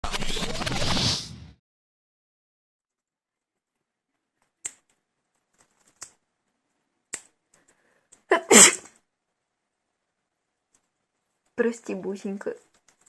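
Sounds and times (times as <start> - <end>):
woman sneezing: 8.3 - 8.9.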